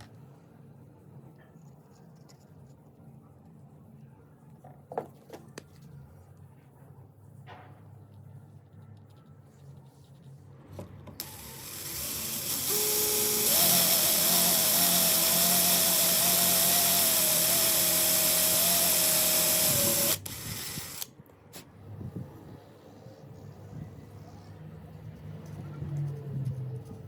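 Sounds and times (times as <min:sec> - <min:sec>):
electric power tool motor whining: 0:11.2 - 0:21.1.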